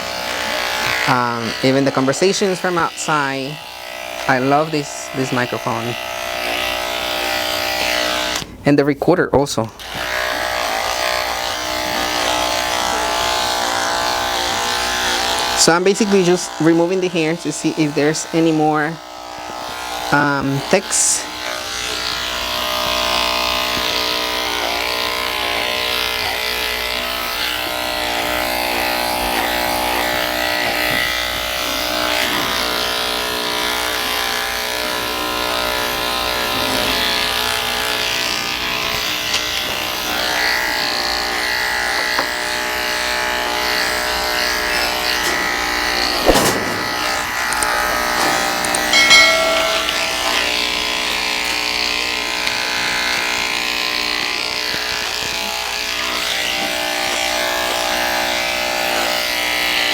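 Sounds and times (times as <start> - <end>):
electric clippers buzzing: 0.0 - 8.6, 9.6 - 59.9
sharp knock: 46.2 - 47.9.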